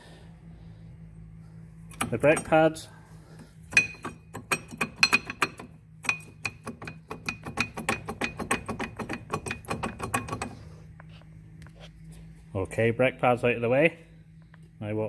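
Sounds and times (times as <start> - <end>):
rapid metallic clicking: 3.7 - 10.6.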